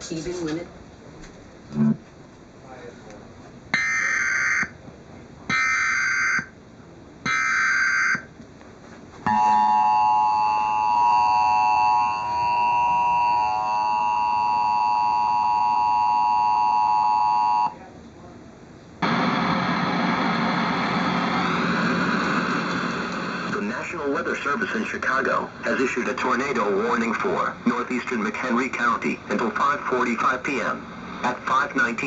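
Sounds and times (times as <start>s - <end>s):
two-tone attention signal: 9.3s - 17.8s
synthesized voice speaking: 23.5s - 32.0s.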